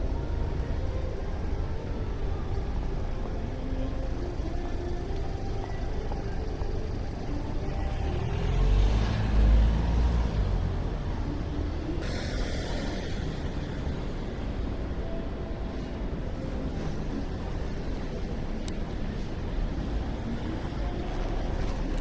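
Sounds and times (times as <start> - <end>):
traffic rumble: 0.0 - 22.0.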